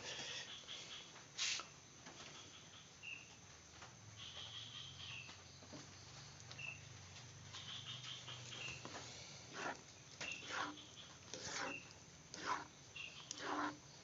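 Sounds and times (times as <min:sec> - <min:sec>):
spatula scraping paste in pan: 0:09.5 - 0:13.8.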